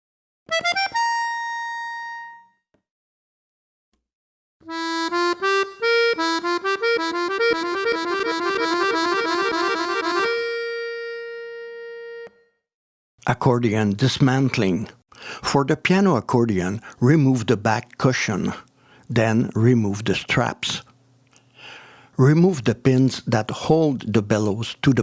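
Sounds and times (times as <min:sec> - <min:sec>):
accordion playing: 0:00.5 - 0:02.6, 0:04.6 - 0:12.5.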